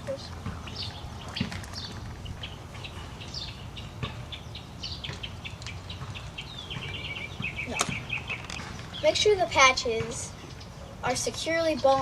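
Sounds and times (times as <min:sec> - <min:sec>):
birds chirping: 0:00.0 - 0:12.0.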